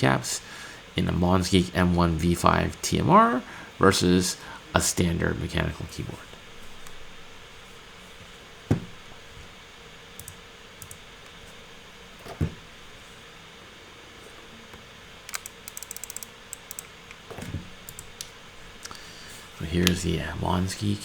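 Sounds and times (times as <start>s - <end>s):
keyboard dull thuds: 8.7s - 9.0s.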